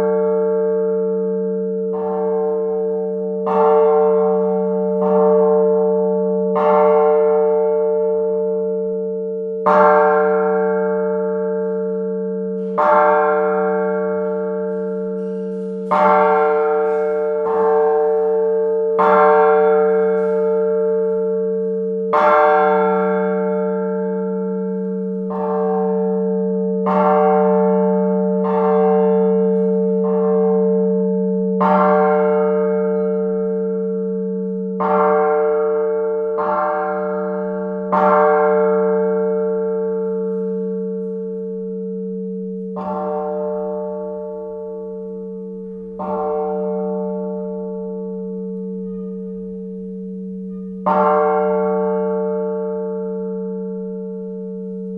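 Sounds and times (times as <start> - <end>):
church bell tolling: 0.0 - 54.9
bell low hum: 44.8 - 54.9.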